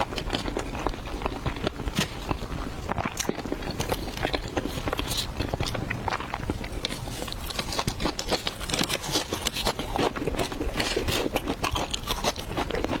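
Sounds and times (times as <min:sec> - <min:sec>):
chewing and biting food: 0:00.0 - 0:13.0.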